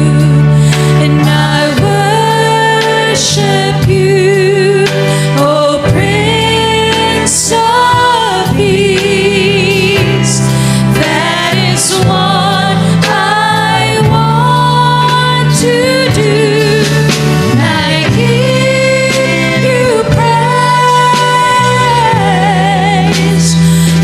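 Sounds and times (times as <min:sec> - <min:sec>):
steady bass accompaniment: 0:00.0 - 0:24.0
voices singing gospel: 0:00.0 - 0:24.0.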